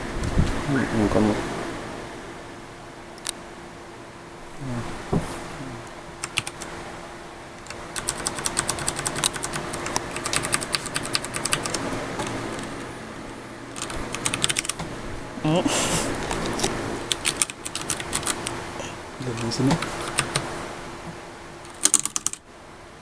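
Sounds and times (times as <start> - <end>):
mechanical keyboard typing: 6.2 - 6.7, 7.6 - 12.7, 13.7 - 14.8, 16.3 - 18.6, 19.2 - 20.5, 21.7 - 22.4.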